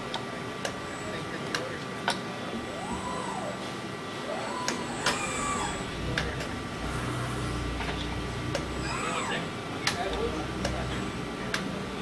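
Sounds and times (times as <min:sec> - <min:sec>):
machine drive whine: 0:00.0 - 0:12.0.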